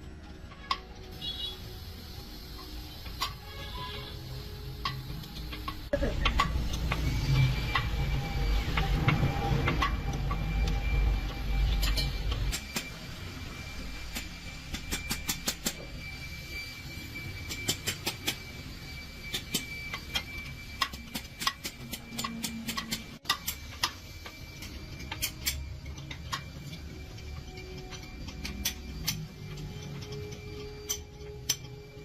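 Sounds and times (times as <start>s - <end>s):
metallic clicks and taps of tools: 4.8s - 7.1s, 19.3s - 24.0s, 27.1s - 31.8s.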